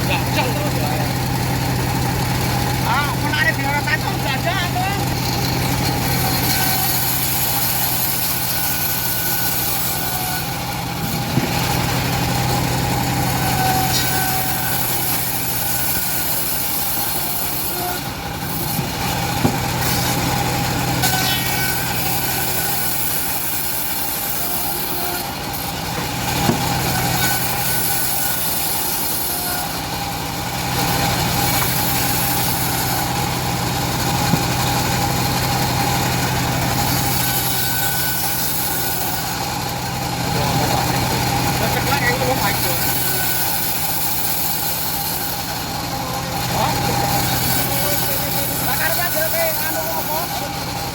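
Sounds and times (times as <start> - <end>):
bandsaw mill running: 0.0 - 50.9
sharp knocks: 11.3 - 11.6, 18.8 - 19.8, 26.4 - 26.7
saw blade hissing through wood: 13.2 - 25.7, 26.7 - 29.8.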